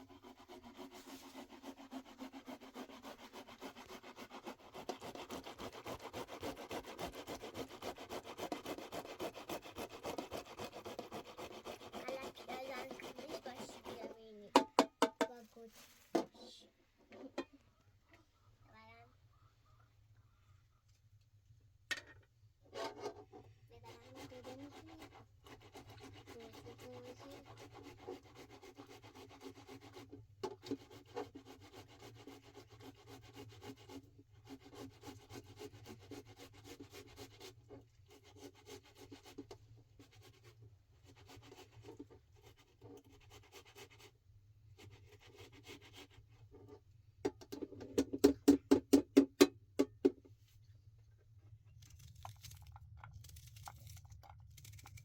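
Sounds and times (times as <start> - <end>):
scraping and rubbing by hand: 0.0 - 14.6, 22.7 - 29.1.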